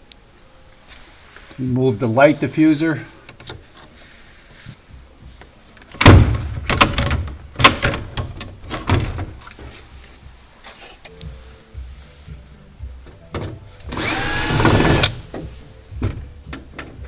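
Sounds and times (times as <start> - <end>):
plastic knocking and clattering: 5.9 - 9.7.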